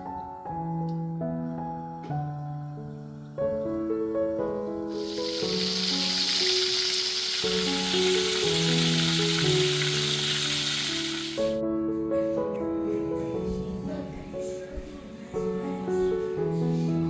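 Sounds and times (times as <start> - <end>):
background music: 0.0 - 17.0
food sizzling in a pan: 4.8 - 11.6.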